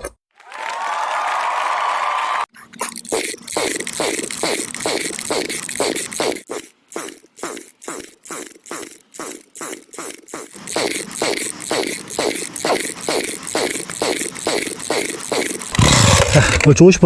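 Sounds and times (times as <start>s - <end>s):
engine cranking: 2.6s - 17.0s
recoil starter cord pulled: 7.0s - 16.8s.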